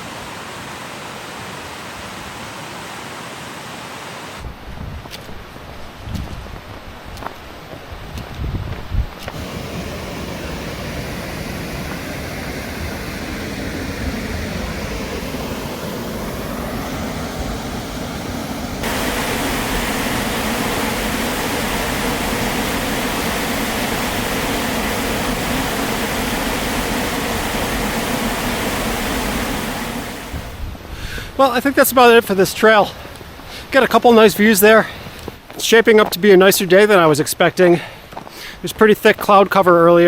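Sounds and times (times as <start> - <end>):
waterfall rushing: 9.4 - 30.6.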